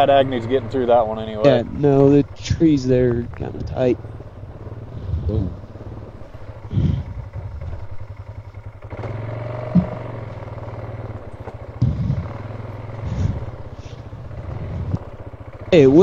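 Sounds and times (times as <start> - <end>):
vehicle engine running: 0.0 - 16.0
vehicle jolting thumps: 9.6 - 10.4, 11.2 - 13.3.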